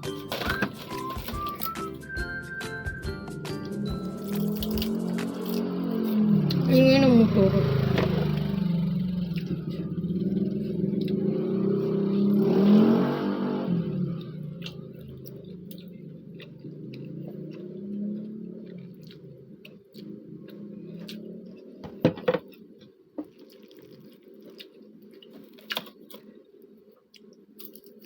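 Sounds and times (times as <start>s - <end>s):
motorcycle engine revving: 3.4s - 22.4s
eating clicks: 14.1s - 21.8s.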